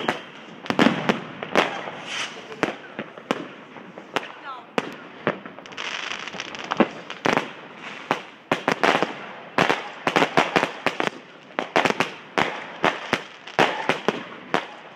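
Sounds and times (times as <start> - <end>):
firework bangs: 0.0 - 14.9
hissing crackle: 0.0 - 14.9.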